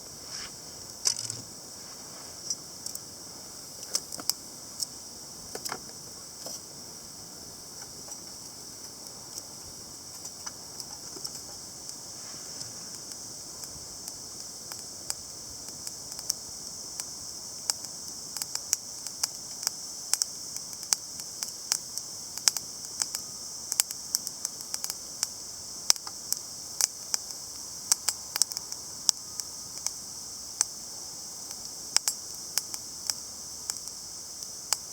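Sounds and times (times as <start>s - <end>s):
steady high hiss: 0.0s - 34.9s
wood fire crackling and popping: 8.1s - 30.0s, 31.4s - 34.9s.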